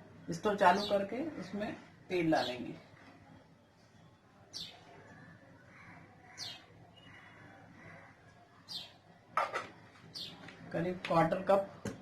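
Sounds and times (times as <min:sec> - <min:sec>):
faint bird chirps: 0:03.2 - 0:09.0.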